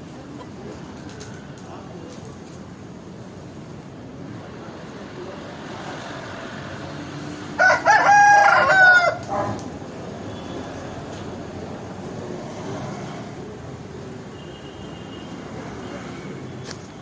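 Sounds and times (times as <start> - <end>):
rooster crowing: 7.6 - 9.3.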